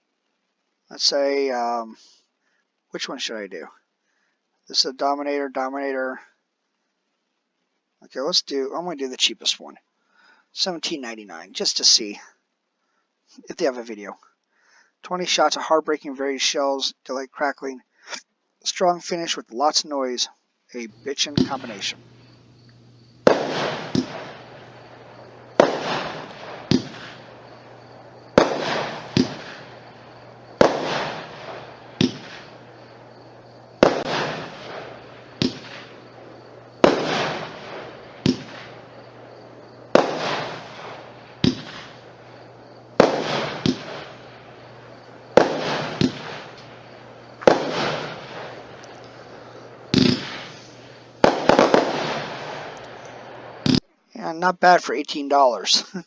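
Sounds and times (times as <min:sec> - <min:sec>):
firework bangs: 0:20.8 - 0:53.8
small firework pops: 0:21.0 - 0:53.8.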